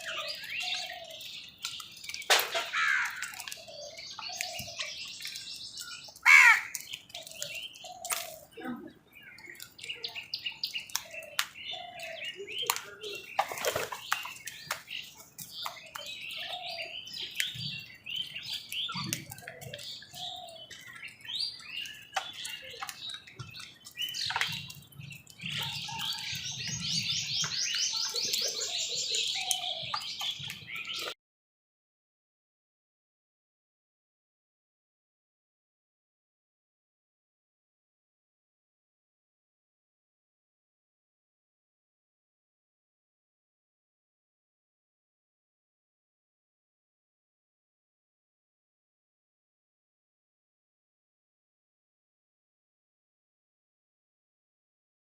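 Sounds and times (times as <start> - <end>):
birds chirping: 0.0 - 31.2
crows cawing: 2.6 - 3.4, 6.2 - 6.8.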